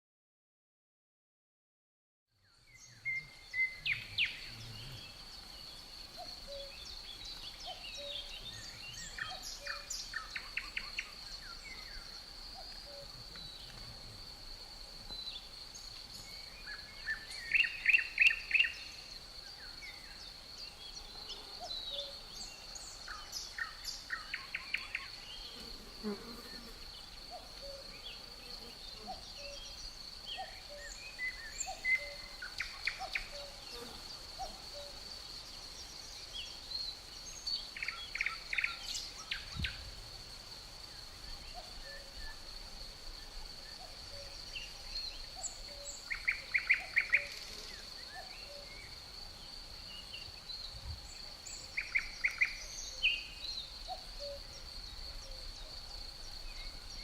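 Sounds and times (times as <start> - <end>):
birds calling and chirping: 2.7 - 13.8.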